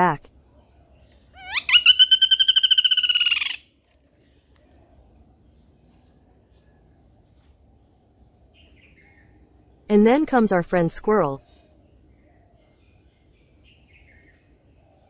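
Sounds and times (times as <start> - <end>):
woodpecker rattling call: 1.4 - 3.6.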